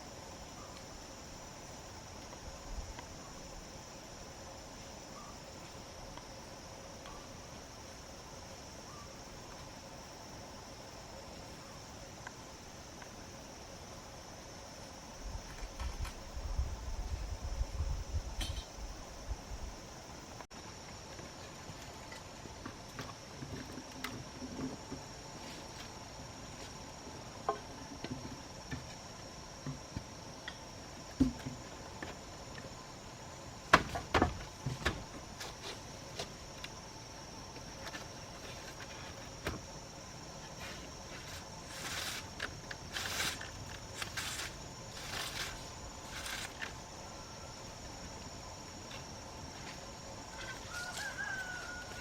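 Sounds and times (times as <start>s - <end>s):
insects buzzing: 0.0s - 52.0s
rustling noise: 40.5s - 46.8s.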